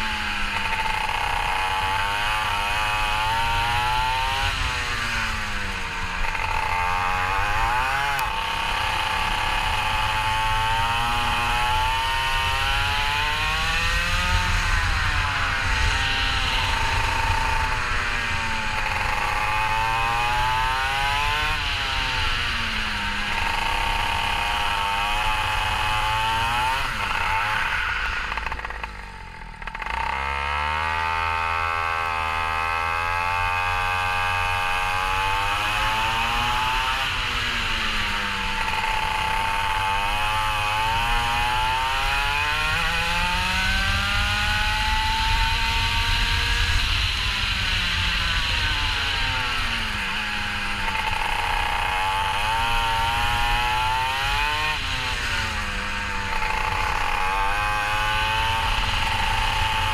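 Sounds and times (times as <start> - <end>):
kart engine revving: 0.0 - 59.9.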